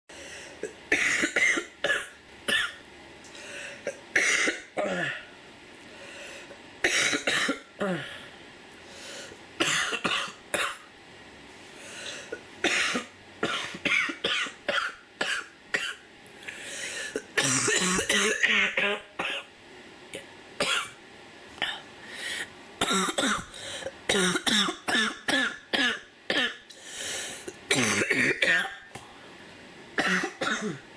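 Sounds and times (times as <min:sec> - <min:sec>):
girl coughing: 0:06.9 - 0:08.0, 0:17.2 - 0:19.5, 0:22.8 - 0:23.5, 0:24.1 - 0:26.6, 0:27.7 - 0:28.8, 0:30.0 - 0:30.8.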